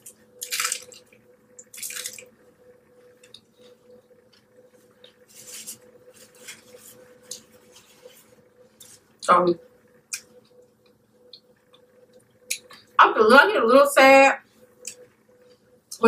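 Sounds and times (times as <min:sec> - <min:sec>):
faint electrical hum: 0:00.0 - 0:16.0.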